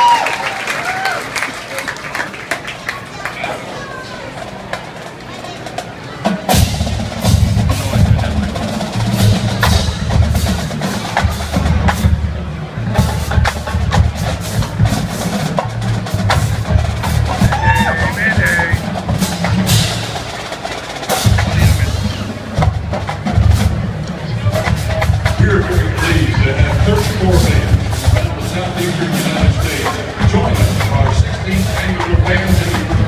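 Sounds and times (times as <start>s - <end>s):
drumline playing cadence: 0.0s - 33.0s
heavy pulsing bass drums: 6.5s - 20.4s, 21.1s - 33.0s.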